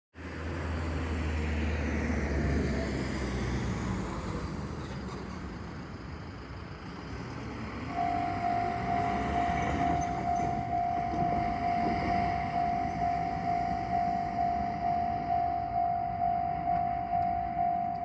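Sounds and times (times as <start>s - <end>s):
vehicle engine rumble: 0.2s - 18.0s
level crossing warning bell: 8.0s - 18.0s.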